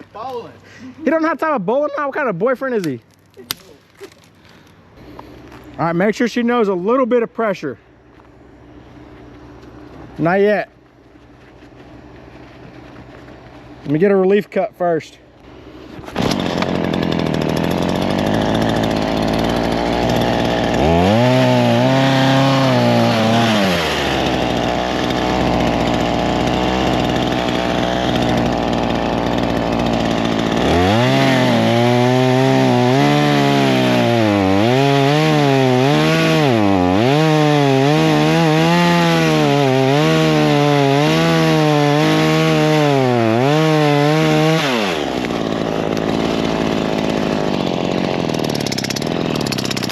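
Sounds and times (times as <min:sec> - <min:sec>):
chainsaw cutting wood: 0:15.4 - 0:49.9.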